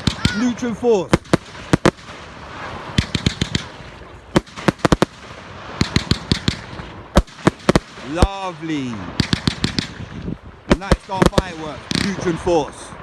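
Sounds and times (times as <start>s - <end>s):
fireworks bangs and cracks: 0.0s - 13.0s.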